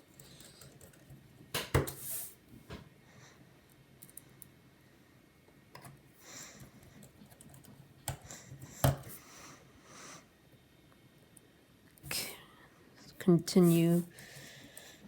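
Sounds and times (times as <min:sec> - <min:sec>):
laptop and tools clicking: 0:00.1 - 0:02.0, 0:06.9 - 0:09.1.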